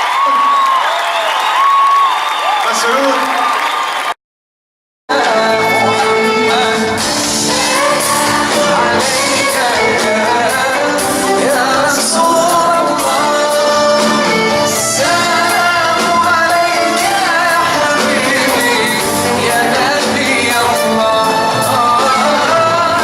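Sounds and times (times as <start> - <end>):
instrumental accompaniment: 5.1 - 23.0
person singing: 5.1 - 23.0.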